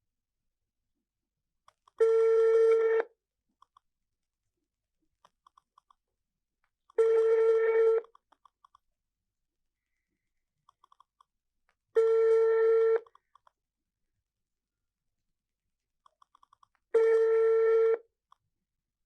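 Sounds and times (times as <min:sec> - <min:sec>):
telephone ringback tone: 0:12.0 - 0:13.1, 0:17.0 - 0:18.0.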